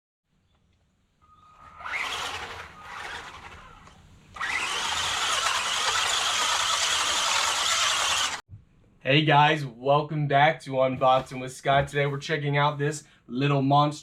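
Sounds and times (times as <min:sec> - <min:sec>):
electric toy car motor whining: 0:01.4 - 0:08.4.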